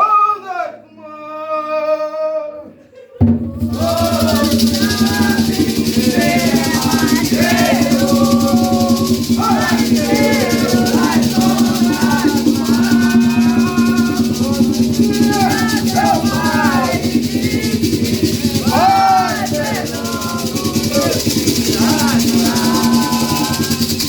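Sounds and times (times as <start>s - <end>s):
voices singing: 0.0s - 24.0s
shaken maraca rhythm: 3.2s - 24.0s
steady low tone: 3.4s - 24.0s.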